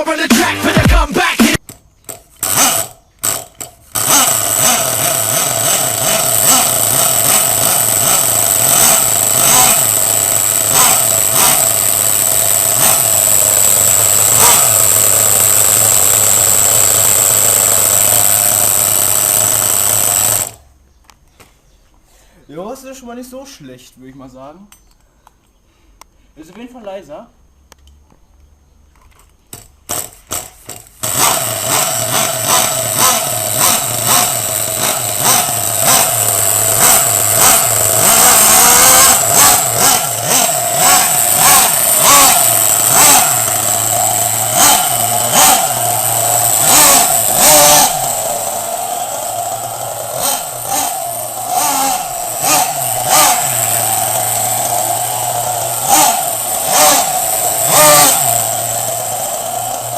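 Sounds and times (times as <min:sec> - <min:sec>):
nitro engine revving: 0:02.4 - 0:20.6, 0:31.0 - 0:59.9.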